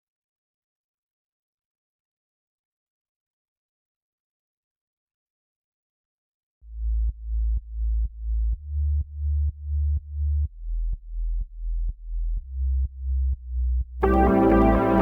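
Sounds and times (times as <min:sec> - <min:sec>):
pulsing synth bass: 0:14.0 - 0:15.0.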